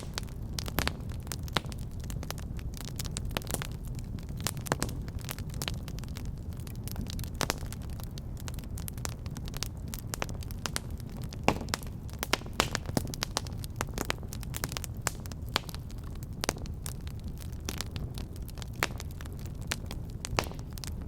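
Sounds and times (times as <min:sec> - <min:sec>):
fire crackling and popping: 0:00.0 - 0:21.0
fire flames rumbling: 0:00.0 - 0:21.0.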